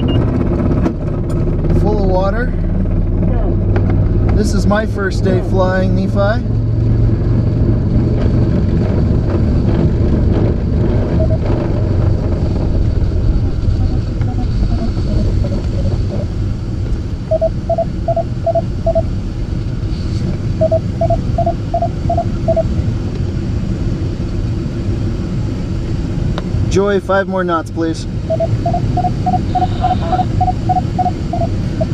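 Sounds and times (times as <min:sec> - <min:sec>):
quick electronic beeps: 0:00.0 - 0:00.2, 0:11.2 - 0:11.4, 0:17.3 - 0:19.1, 0:20.6 - 0:22.7, 0:28.3 - 0:31.9
airflow rushing in cockpit: 0:00.0 - 0:31.9.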